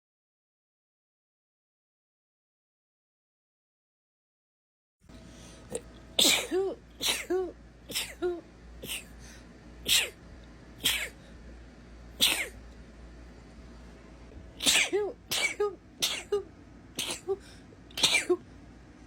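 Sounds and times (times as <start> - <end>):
woman sneezing: 5.7 - 9.1, 9.8 - 10.2, 10.8 - 11.2, 12.2 - 12.6, 14.6 - 18.4.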